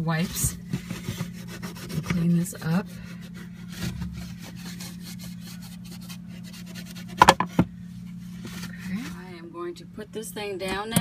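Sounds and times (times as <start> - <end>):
wipe scrubbing sink: 0.0 - 7.6
sharp knocks: 7.2 - 7.7.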